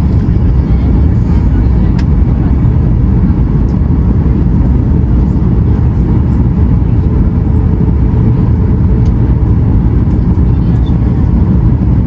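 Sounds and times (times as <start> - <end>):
airliner cabin engine rumble: 0.0 - 12.0.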